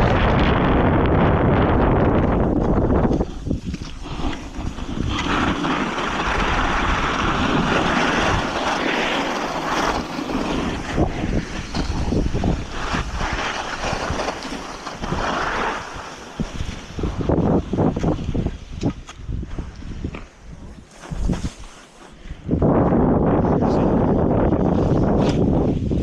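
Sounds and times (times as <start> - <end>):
wind buffeting microphone: 0.0 - 26.0
steady rushing hiss: 2.4 - 18.1.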